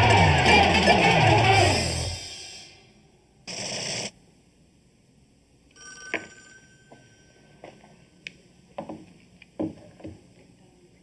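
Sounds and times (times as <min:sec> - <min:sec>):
telephone bell ringing: 0:05.8 - 0:07.5.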